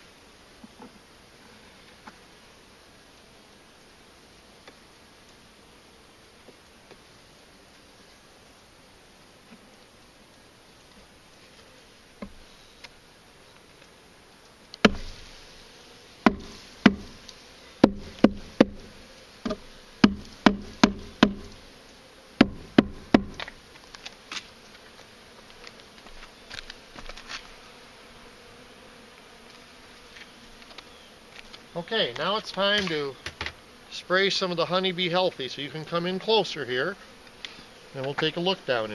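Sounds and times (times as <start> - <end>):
honeybees buzzing: 0.0 - 38.9
sharp loud knocks: 14.8 - 15.1, 16.2 - 17.1, 17.8 - 21.5, 22.4 - 23.5.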